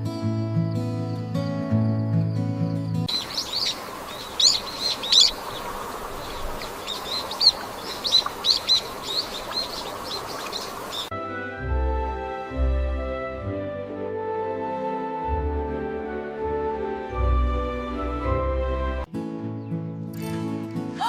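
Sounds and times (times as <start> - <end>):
songbirds chirping and singing: 2.0 - 11.1
background hiss: 3.1 - 11.1
instrumental music: 11.1 - 21.0.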